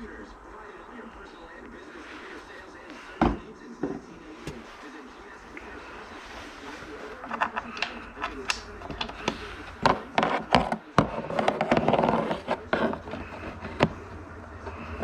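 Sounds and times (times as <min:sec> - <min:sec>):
scraping and rustling: 0:00.1 - 0:15.0.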